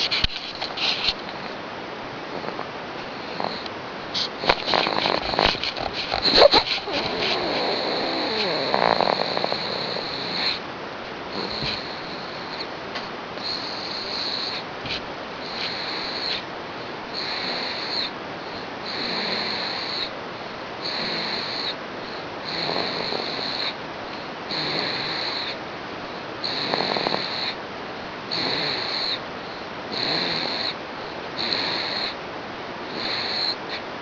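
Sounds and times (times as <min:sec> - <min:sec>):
pet snoring with whistling: 0:03.2 - 0:10.6, 0:11.3 - 0:12.7, 0:13.4 - 0:14.7, 0:15.4 - 0:16.4, 0:17.1 - 0:20.2, 0:20.8 - 0:23.8, 0:24.5 - 0:25.6, 0:26.4 - 0:27.6, 0:28.3 - 0:29.2, 0:29.9 - 0:30.8, 0:31.4 - 0:32.2, 0:32.9 - 0:33.8.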